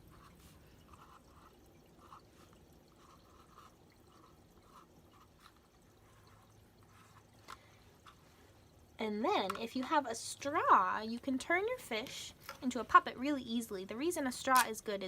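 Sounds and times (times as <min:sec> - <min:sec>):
marker scratching on cardboard: 0:00.1 - 0:07.2.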